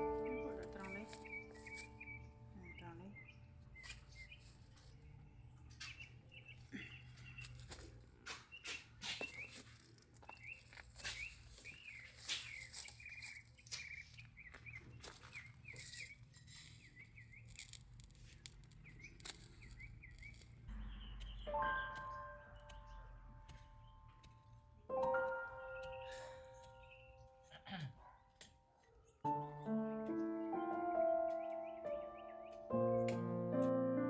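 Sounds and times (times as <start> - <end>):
small bird chirping: 0.0 - 7.9, 8.5 - 33.7
sharp clicks and taps: 18.4 - 26.9, 32.5 - 33.8.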